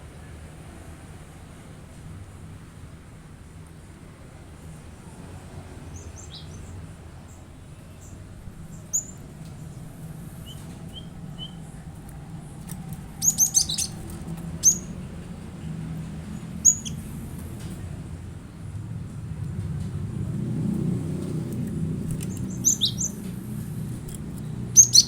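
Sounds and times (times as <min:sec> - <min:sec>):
bird chirping: 0:05.9 - 0:17.3, 0:22.1 - 0:23.7, 0:24.4 - 0:25.0
steady low hum: 0:06.6 - 0:25.0.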